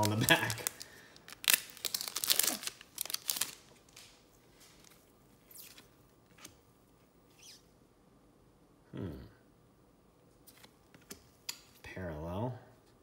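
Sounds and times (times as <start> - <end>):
trading cards and foil wrapper crinkling: 0.0 - 5.0.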